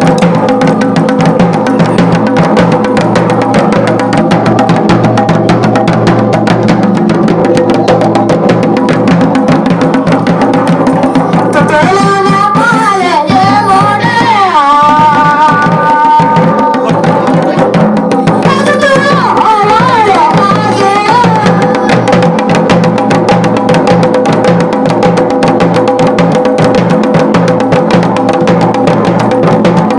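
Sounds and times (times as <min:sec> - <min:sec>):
drum beaten in fast rhythm: 0:00.0 - 0:29.9
person singing wavering melody: 0:10.9 - 0:22.5.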